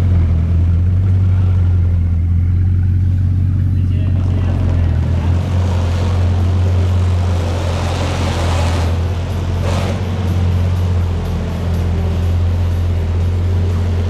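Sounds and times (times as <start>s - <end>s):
car engine droning: 0.0s - 14.0s
rush of noise: 4.0s - 14.0s.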